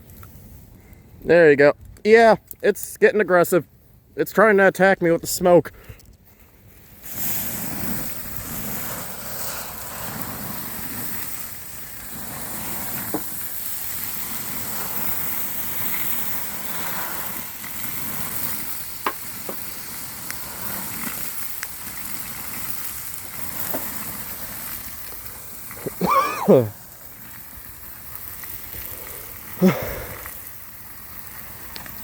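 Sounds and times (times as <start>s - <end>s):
melting plastic sizzling crackle: 0.0s - 32.0s
sharp pops: 18.6s - 19.8s.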